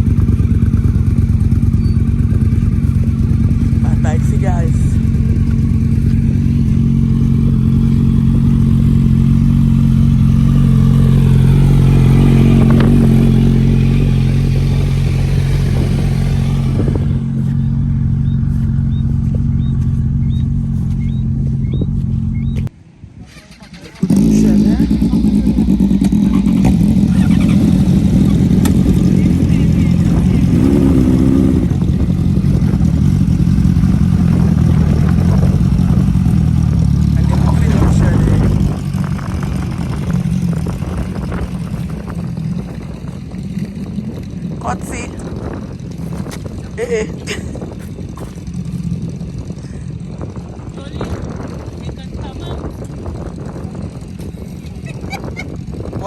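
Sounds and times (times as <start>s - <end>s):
motorcycle engine idling: 0.0s - 56.0s.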